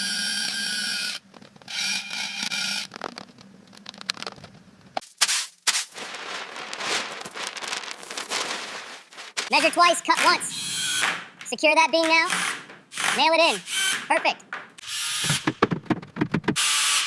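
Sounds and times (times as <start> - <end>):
scraping: 5.8 - 9.6
knocks and sharp impacts: 14.5 - 16.6.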